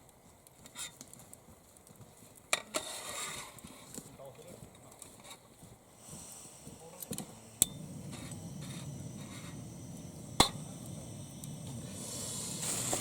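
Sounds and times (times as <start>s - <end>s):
steady low rumble: 5.8s - 13.0s.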